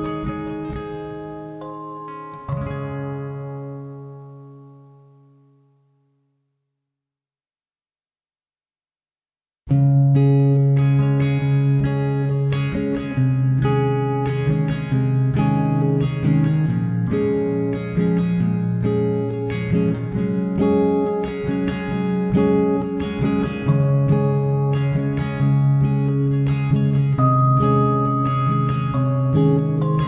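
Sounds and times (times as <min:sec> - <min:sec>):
acoustic guitar plucked notes: 0:00.0 - 0:05.9, 0:09.7 - 0:30.0.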